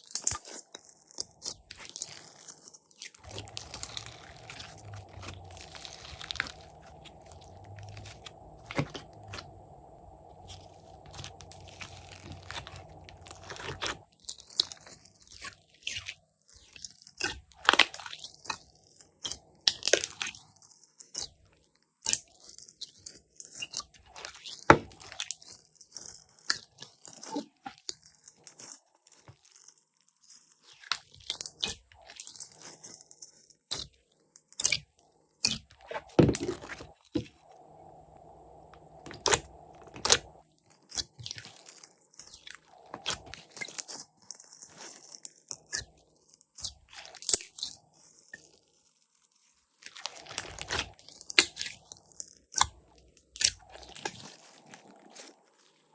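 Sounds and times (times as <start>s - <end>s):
hands squishing slime: 0.0s - 20.4s, 34.6s - 48.2s, 49.8s - 55.5s
low steady hum: 0.2s - 21.5s, 34.8s - 48.9s.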